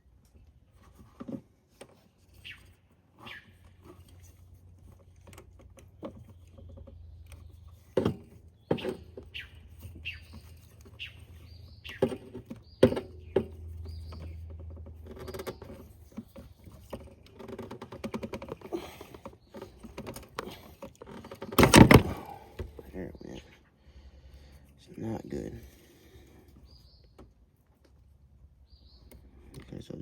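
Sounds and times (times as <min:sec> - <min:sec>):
hand tools clicking and knocking on metal: 0:03.6 - 0:22.7.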